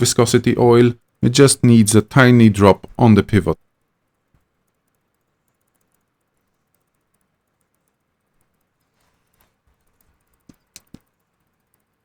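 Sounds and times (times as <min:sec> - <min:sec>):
faint small clicks: 0:04.1 - 0:12.0.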